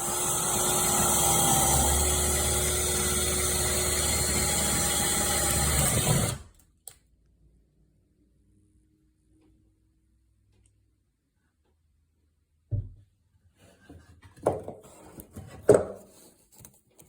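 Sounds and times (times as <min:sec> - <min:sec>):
power tool motor running: 0:00.0 - 0:06.5.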